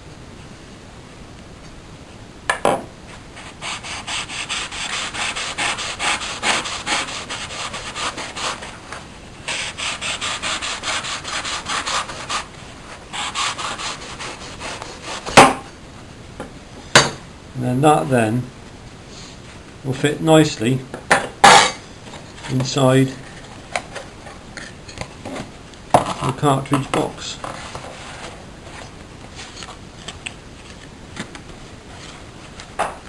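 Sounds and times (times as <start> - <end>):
knife sawing through paper roll: 3.4 - 8.7, 9.5 - 12.5, 13.1 - 15.4.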